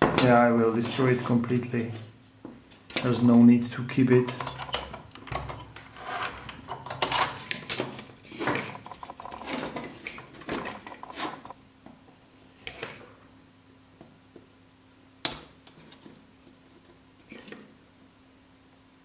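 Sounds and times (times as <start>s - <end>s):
hand tools clicking and scraping: 4.2s - 11.5s.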